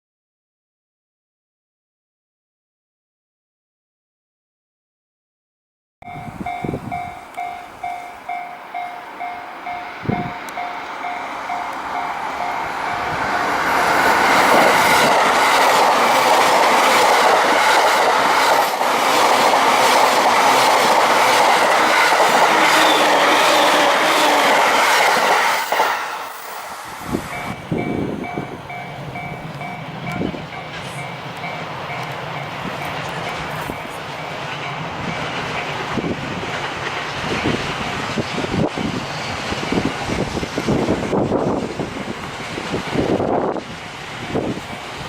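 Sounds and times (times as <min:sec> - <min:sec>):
level crossing warning bell: 0:06.0 - 0:16.8, 0:25.2 - 0:35.9
train wheels clattering: 0:06.2 - 0:45.0.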